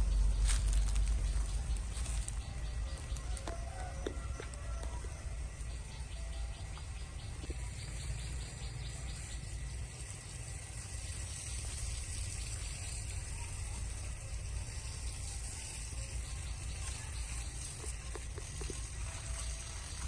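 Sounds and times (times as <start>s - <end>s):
low rumble: 0.0s - 3.3s
insects chirring: 0.0s - 20.0s
rapid pulsing chirp: 0.0s - 20.0s.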